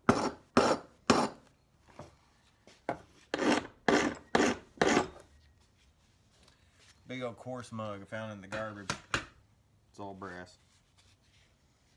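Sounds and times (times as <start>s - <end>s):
file rasping on brass: 0.1s - 1.4s, 3.3s - 5.2s.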